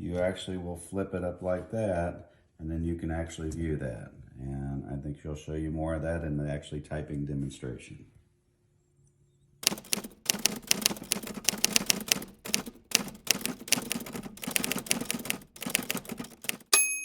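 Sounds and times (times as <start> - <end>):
manual typewriter typing: 9.6 - 16.8
typewriter carriage bell ring: 9.6 - 17.0.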